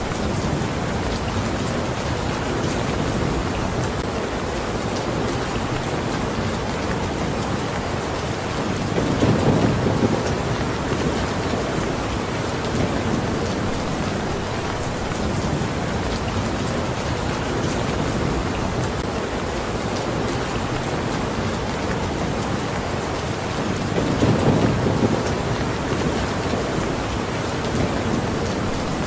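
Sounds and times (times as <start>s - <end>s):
steady rain falling: 0.0s - 29.0s
low rumble of thunder: 8.7s - 18.9s, 23.7s - 29.0s.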